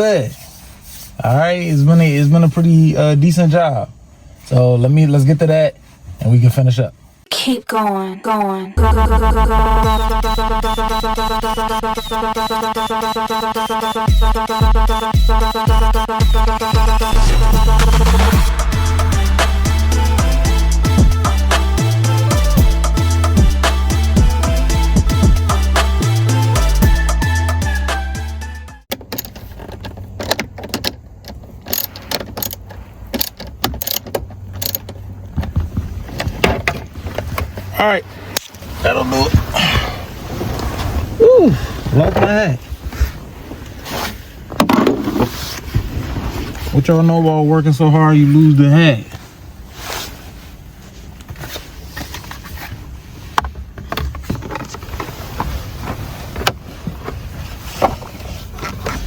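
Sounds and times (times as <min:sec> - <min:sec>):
steady low hum: 0:08.7 - 0:23.6
low steady rumble: 0:08.8 - 0:12.5, 0:16.7 - 0:23.6.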